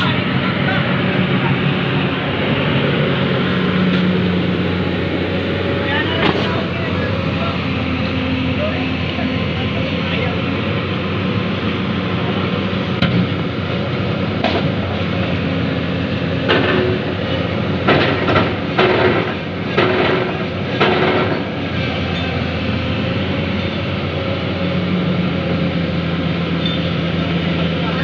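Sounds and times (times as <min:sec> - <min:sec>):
excavator engine running: 0:00.0 - 0:28.0
excavator bucket knocks and clanks: 0:17.8 - 0:21.5.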